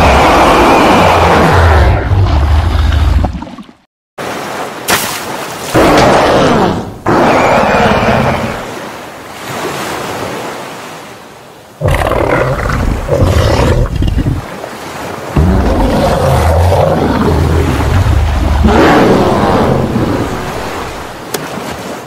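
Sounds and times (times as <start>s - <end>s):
monster roars: 0.0s - 2.5s, 5.8s - 8.6s, 11.8s - 14.4s, 15.4s - 20.4s.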